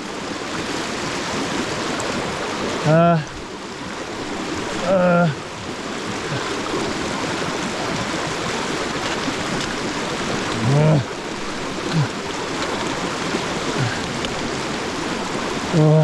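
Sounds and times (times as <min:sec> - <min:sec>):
river rushing: 0:00.0 - 0:16.0
man grunting: 0:02.8 - 0:03.3, 0:04.8 - 0:05.4, 0:10.6 - 0:11.1, 0:11.9 - 0:12.2, 0:13.8 - 0:14.0, 0:15.7 - 0:16.0.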